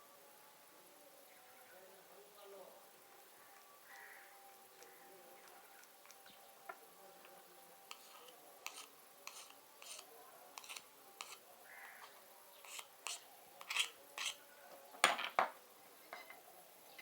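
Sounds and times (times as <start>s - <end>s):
small clicks and scrapes: 4.8s - 11.4s, 12.6s - 14.4s.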